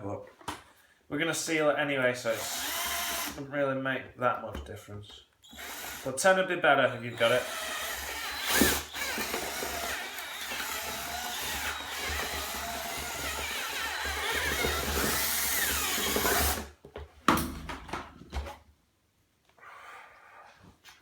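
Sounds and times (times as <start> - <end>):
electric drill boring into plastic: 2.3 - 3.4, 5.4 - 6.1, 7.1 - 16.7
plastic squealing against drill bit: 2.3 - 3.4, 5.4 - 6.1, 7.0 - 16.6.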